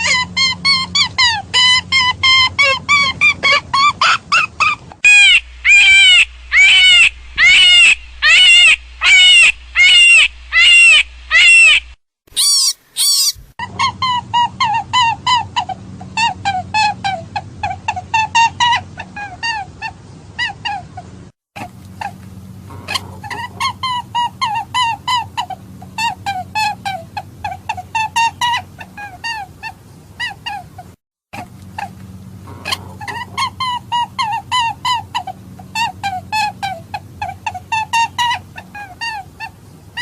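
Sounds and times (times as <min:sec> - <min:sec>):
rabbit call high cries: 0:00.0 - 0:21.0, 0:22.0 - 0:30.8, 0:31.4 - 0:40.0
low steady hum: 0:04.6 - 0:12.0, 0:12.7 - 0:40.0.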